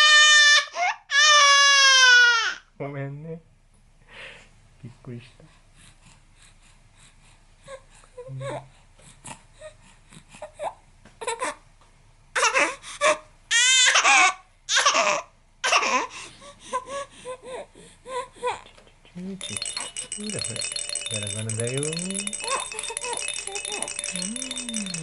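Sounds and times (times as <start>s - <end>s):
baby crying: 12.4s - 16.1s.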